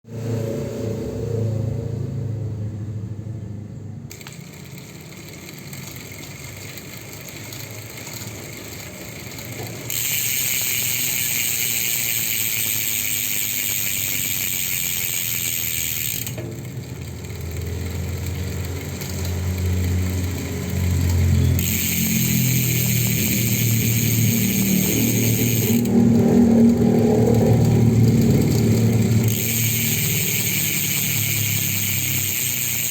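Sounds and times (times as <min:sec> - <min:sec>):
bike hub ratchet buzzing: 0:04.1 - 0:32.9
low rumble: 0:22.7 - 0:29.9.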